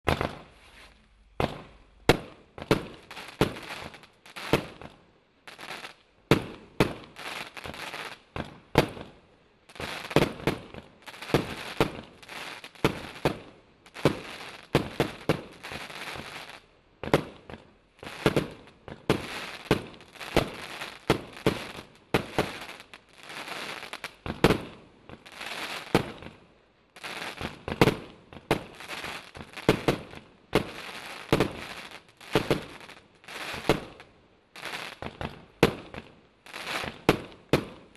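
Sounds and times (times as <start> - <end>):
firework barrage bangs: 0.1 - 0.5.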